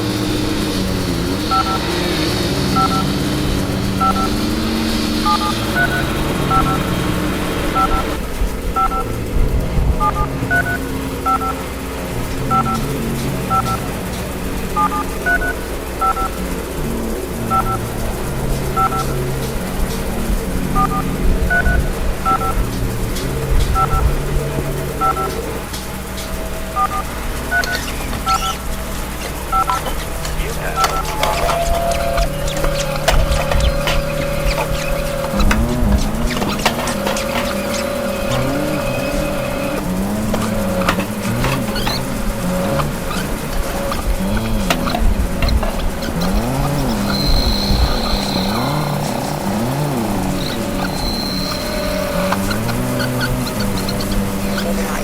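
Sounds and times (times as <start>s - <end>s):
steady low drone: 0.0s - 55.0s
steady low rumble: 0.0s - 55.0s
telephone keypad beeps: 2.8s - 3.0s, 5.2s - 6.8s, 7.8s - 8.0s, 26.8s - 28.5s, 29.5s - 29.8s.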